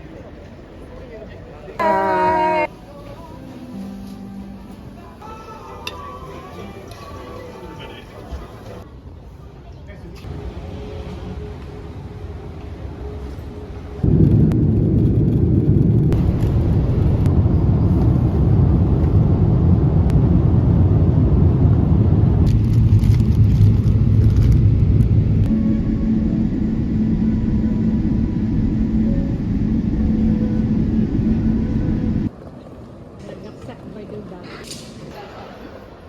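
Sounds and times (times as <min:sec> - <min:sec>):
vehicle rumble from inside: 0:10.2 - 0:32.4
faint steady hum: 0:23.7 - 0:32.3.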